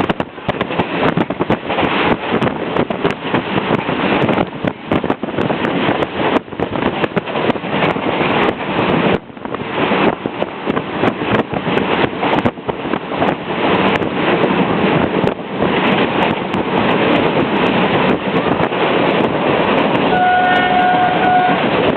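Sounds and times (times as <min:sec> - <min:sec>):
sharp clicks and rattles: 0:00.0 - 0:20.1
train carriage running: 0:00.0 - 0:21.9
wind buffeting microphone: 0:00.0 - 0:21.9
steady horn note: 0:20.1 - 0:21.8.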